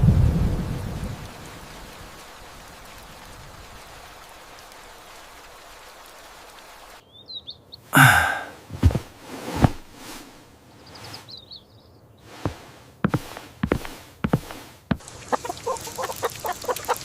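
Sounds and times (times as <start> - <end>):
heavy rain: 0.0 - 7.0, 8.0 - 8.5, 15.0 - 17.0
high bird chirps: 7.0 - 7.7, 10.8 - 12.1.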